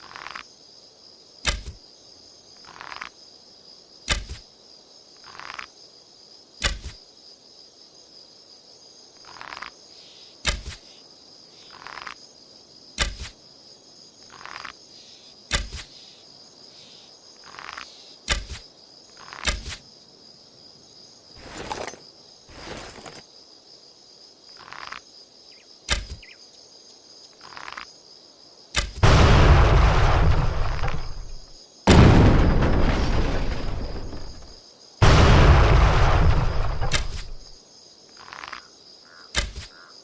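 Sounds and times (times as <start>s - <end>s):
insects chirring: 0.0s - 40.0s
loud explosions: 29.0s - 37.5s
bow snaps: 39.4s - 39.7s.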